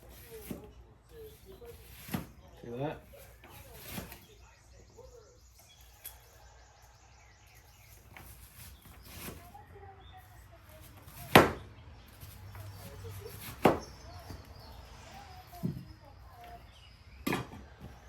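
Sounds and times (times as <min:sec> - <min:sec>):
knife chopping on cutting board: 0:13.4 - 0:13.9.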